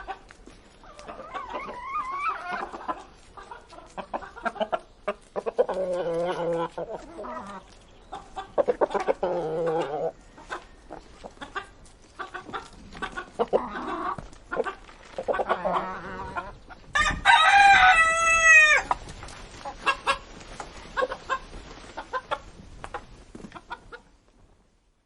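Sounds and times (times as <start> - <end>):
chickens clucking: 0.0 - 24.2
chickens pecking: 0.0 - 24.3
rooster crowing: 17.0 - 18.9.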